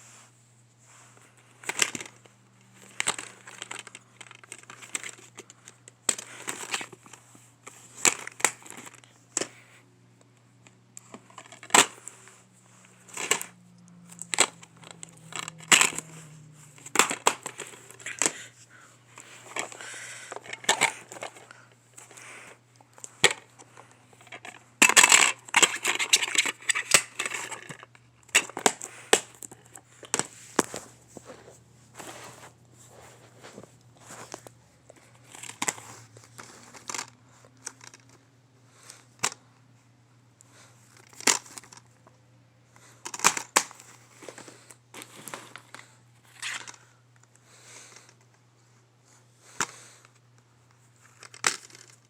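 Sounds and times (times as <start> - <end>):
plastic and paper crinkling: 0.9 - 9.8, 11.0 - 38.2, 42.8 - 46.9.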